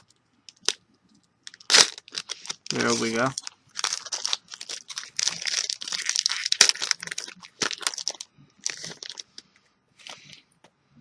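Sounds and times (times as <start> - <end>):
plastic wrapper crinkling: 0.0 - 9.4.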